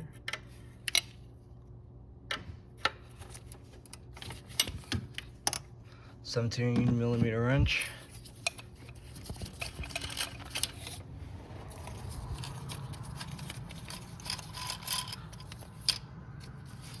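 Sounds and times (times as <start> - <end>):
low steady hum: 0.0 - 17.0
wrench clicking and scraping: 8.2 - 11.0, 11.7 - 17.0.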